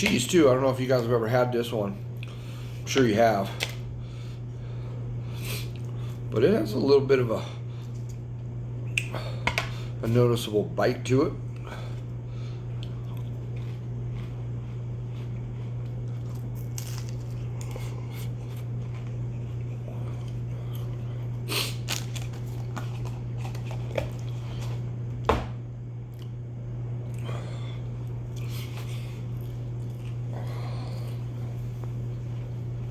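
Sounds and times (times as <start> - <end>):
steady low hum: 0.0 - 32.9
cracker crunching: 11.5 - 25.3, 27.0 - 32.9.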